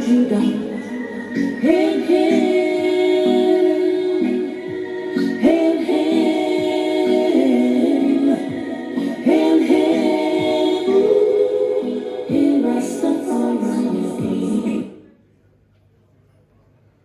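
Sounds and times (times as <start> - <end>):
choir-like vocal harmonies: 0.0 - 15.3
reggae music over sound system: 0.8 - 11.0.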